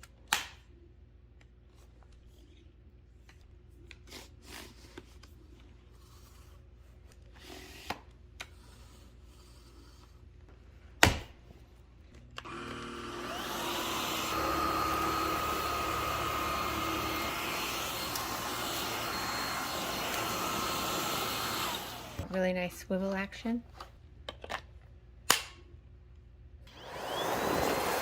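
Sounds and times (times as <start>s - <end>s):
vacuum motor whine: 12.4s - 22.3s, 26.7s - 28.0s.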